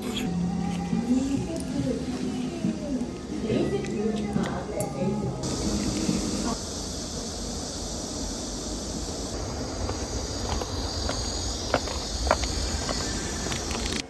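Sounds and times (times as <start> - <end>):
high insect-like hiss: 5.4 - 14.0.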